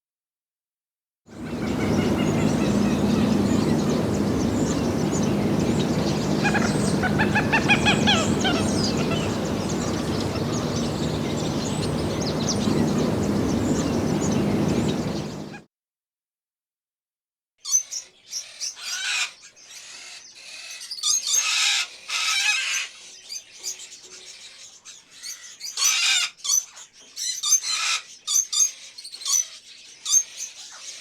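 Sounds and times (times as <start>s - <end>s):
birds calling: 1.3s - 15.6s
steady low murmur: 1.3s - 15.6s
high chirps: 1.4s - 15.5s.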